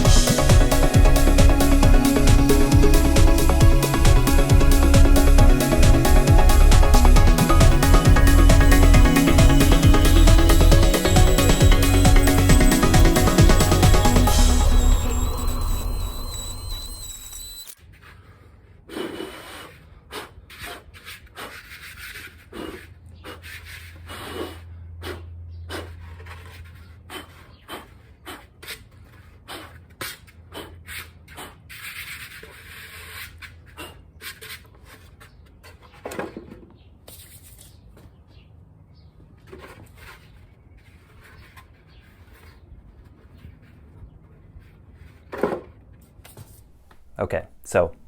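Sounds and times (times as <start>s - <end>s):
sander sanding plastic: 0.0s - 17.8s.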